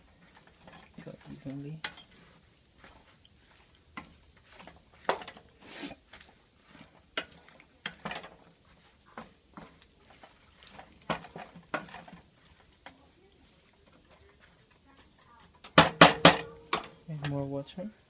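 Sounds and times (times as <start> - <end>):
utensil scraping pot: 0.0 - 17.7
utensil knocking against pot: 15.6 - 17.4.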